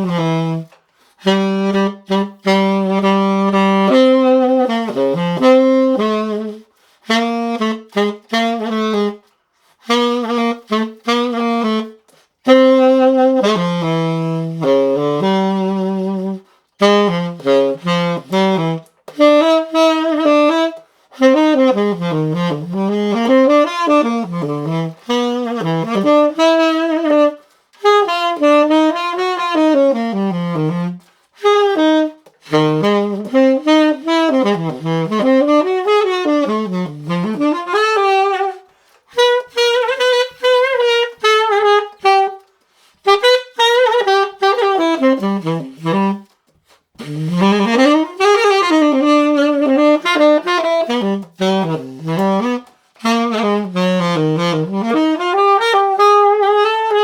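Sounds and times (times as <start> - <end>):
tenor saxophone jazz melody: 0.0 - 57.0.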